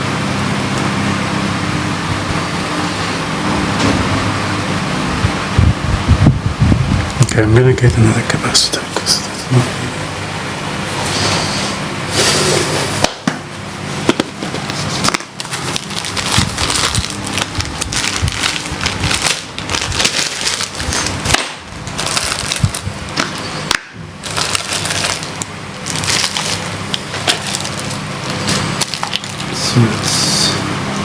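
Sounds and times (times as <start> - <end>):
rummaging through electronic parts: 14.4 - 21.3.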